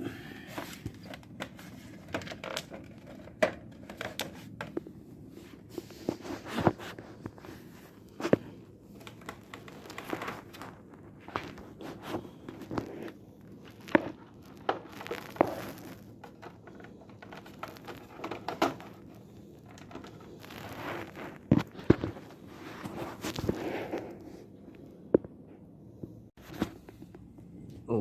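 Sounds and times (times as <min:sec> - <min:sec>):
rustling of parts handled: 0:00.4 - 0:23.6
plastic casing clicks and knocks: 0:00.9 - 0:04.8.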